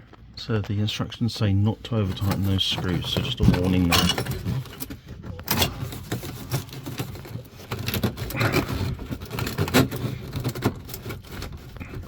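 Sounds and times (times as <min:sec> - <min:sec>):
screwdriver clicking and scraping metal: 0:05.5 - 0:12.0.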